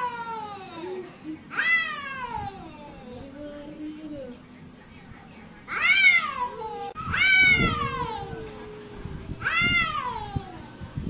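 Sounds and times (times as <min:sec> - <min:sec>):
cat meowing: 0:05.7 - 0:08.4, 0:09.4 - 0:10.6.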